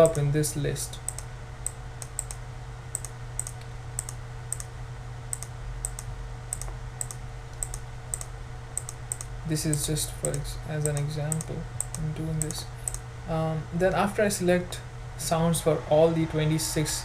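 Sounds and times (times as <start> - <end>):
low electrical hum: 0.0 - 17.0
computer mouse clicking: 1.1 - 4.7, 5.3 - 13.0.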